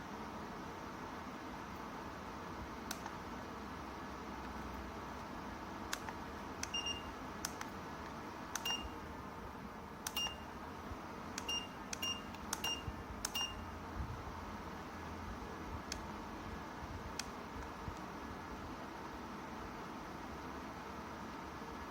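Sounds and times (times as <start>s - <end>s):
short electronic beeps: 6.7s - 7.1s, 8.6s - 9.0s, 10.1s - 10.5s, 11.4s - 13.7s.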